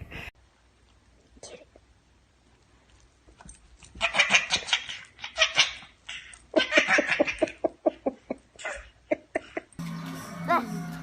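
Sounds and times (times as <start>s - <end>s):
person laughing: 6.5s - 9.8s.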